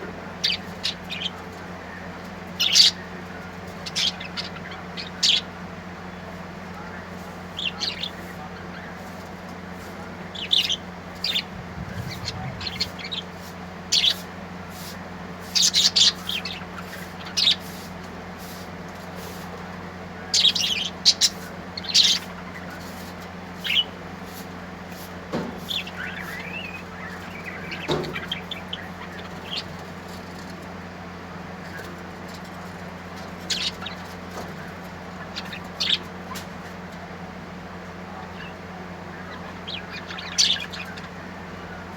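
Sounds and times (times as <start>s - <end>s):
small birds chirping: 0.0s - 41.9s
steady low hum: 0.0s - 41.9s.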